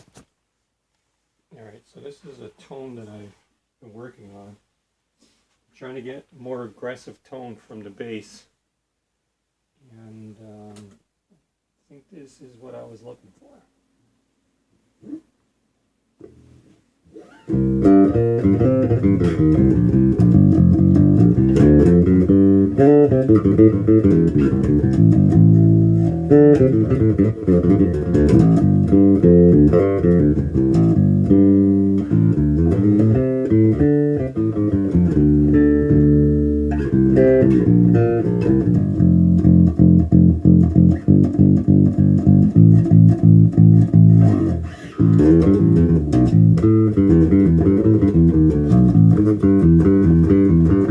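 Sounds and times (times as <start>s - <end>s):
electric bass riff: 16.2s - 50.9s.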